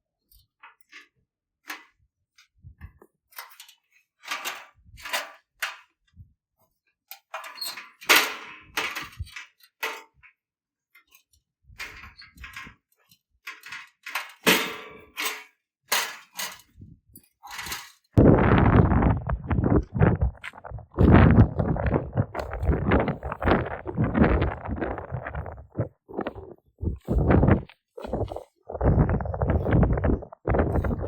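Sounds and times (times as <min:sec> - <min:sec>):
handling knocks and clunks: 0:16.1 - 0:31.0
scraping rustles: 0:17.5 - 0:31.0.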